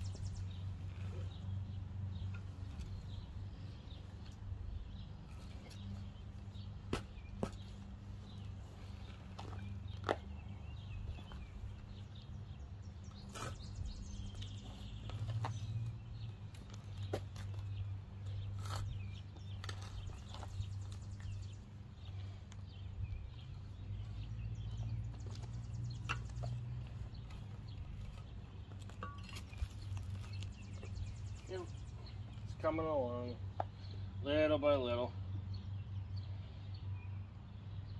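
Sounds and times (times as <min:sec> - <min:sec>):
shovel digging into soil: 0:13.1 - 0:14.3.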